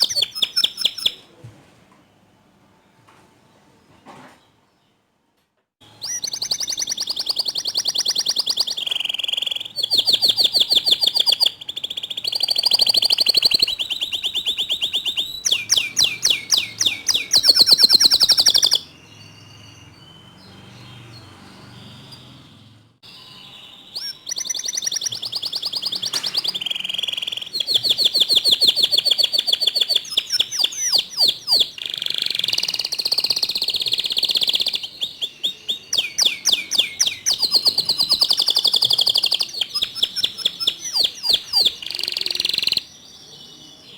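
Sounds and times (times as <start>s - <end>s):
canary singing rolling trills: 0.0s - 1.3s, 5.8s - 43.9s.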